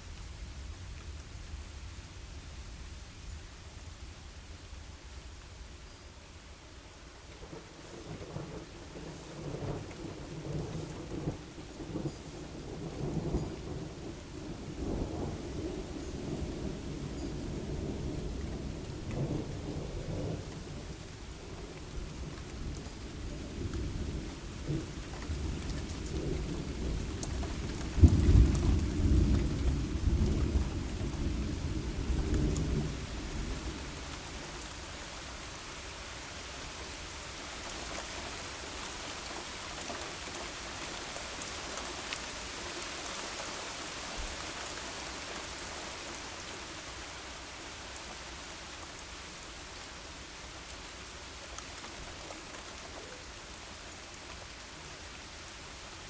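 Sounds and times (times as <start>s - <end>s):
heavy rain falling: 4.4s - 56.0s
thunder rumbling: 8.1s - 34.2s.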